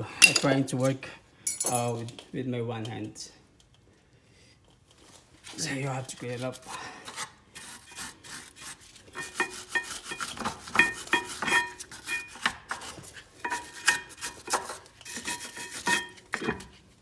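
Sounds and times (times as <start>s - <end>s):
brush scraping metal: 5.6s - 16.9s.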